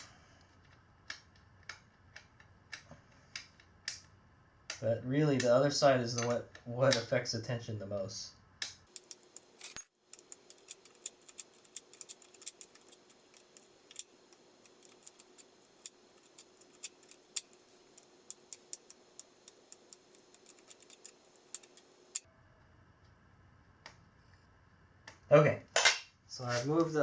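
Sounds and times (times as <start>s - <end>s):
metallic hand-tool clicking: 8.9s - 22.2s.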